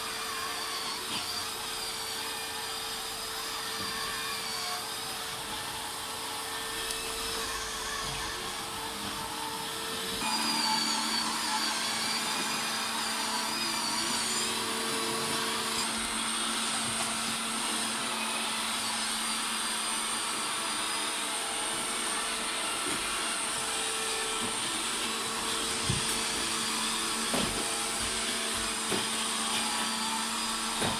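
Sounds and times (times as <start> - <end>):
robot vacuum motor whirring: 0.0 - 30.9.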